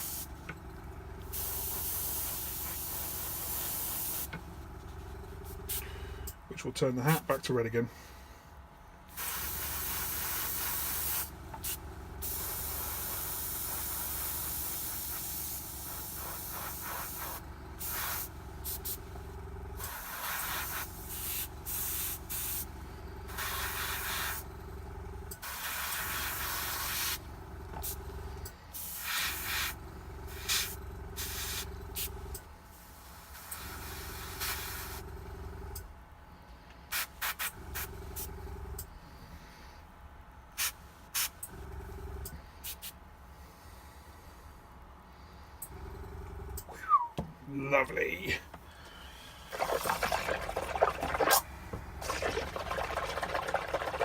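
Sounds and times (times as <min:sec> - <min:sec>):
steady low hum: 0:00.0 - 0:54.0
airbrush hissing: 0:01.4 - 0:04.3, 0:09.2 - 0:11.3, 0:12.3 - 0:19.0, 0:19.8 - 0:22.6.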